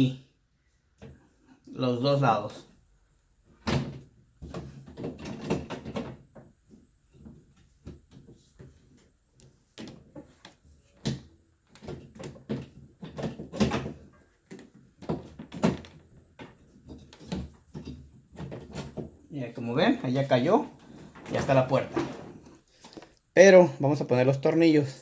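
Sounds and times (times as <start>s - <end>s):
refrigerator door knocks and clunks: 3.6s - 6.3s.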